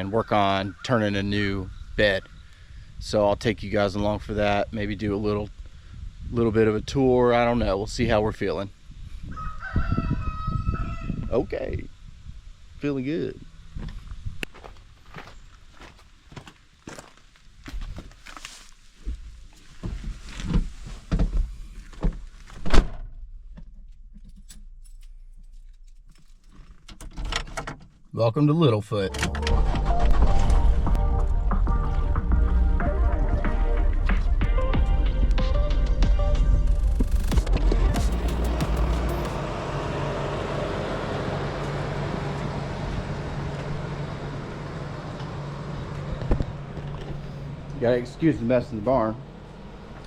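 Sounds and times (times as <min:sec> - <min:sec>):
door opening: 0:26.1 - 0:28.0, 0:29.0 - 0:31.0, 0:45.1 - 0:47.8
vehicle engine humming: 0:29.1 - 0:50.0.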